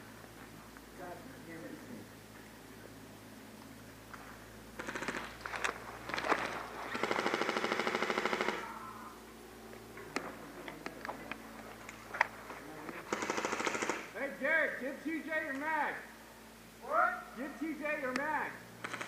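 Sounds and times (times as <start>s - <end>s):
airsoft rifle automatic bursts: 4.8s - 8.7s, 13.1s - 14.1s, 18.8s - 19.0s.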